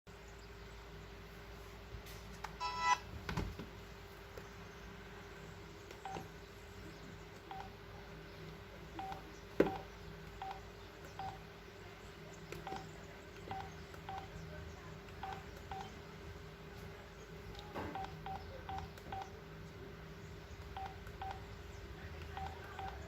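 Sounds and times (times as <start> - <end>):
faint steady hum: 0.1 - 23.0
phone key-press beeps: 2.5 - 3.0, 6.0 - 6.3, 7.5 - 7.7, 9.0 - 11.4, 12.5 - 14.4, 15.1 - 16.0, 17.6 - 19.3, 20.7 - 21.4, 22.2 - 23.0.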